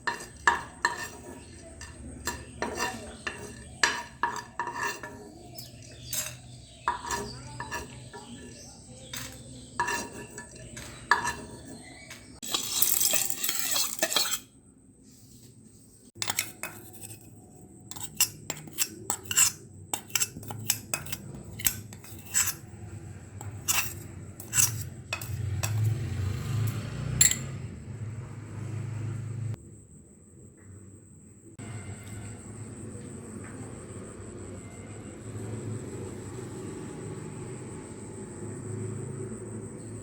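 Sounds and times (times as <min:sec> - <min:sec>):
spoon clinking against metal pan: 0:00.0 - 0:14.4, 0:23.4 - 0:25.9, 0:26.7 - 0:27.6
scraping and rustling: 0:00.0 - 0:14.5, 0:23.4 - 0:26.7.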